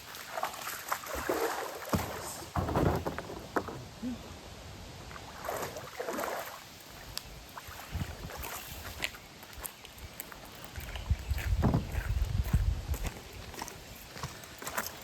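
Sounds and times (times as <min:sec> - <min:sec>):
paddle splashing water: 0:00.0 - 0:03.8, 0:05.1 - 0:09.2.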